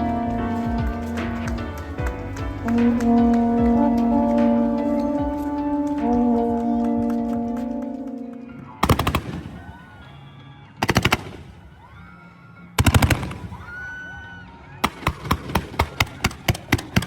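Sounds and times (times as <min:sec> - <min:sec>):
guns firing volleys: 0:08.8 - 0:09.8, 0:10.8 - 0:11.8, 0:12.8 - 0:13.6, 0:14.8 - 0:17.0
single gunshots: 0:08.8 - 0:09.8, 0:10.8 - 0:11.6.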